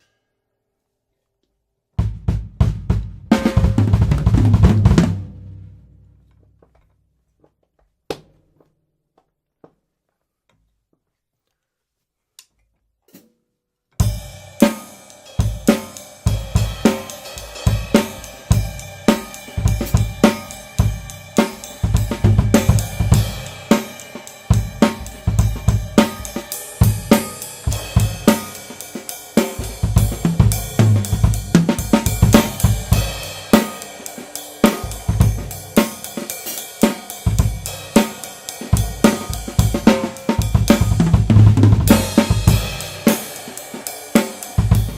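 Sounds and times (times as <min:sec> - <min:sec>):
drum kit groove: 0:02.0 - 0:06.0, 0:14.0 - 0:44.9.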